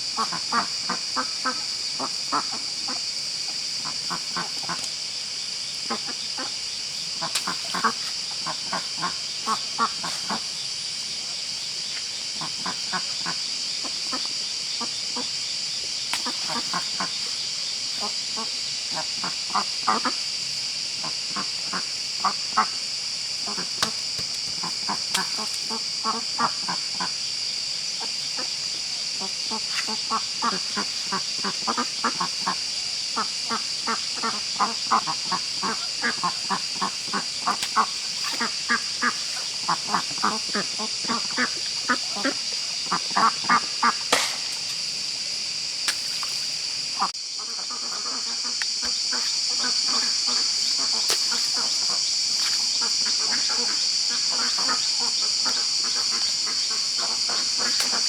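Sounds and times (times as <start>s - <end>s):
high-pitched insect drone: 0.0s - 58.0s
sharp click: 44.1s - 44.8s.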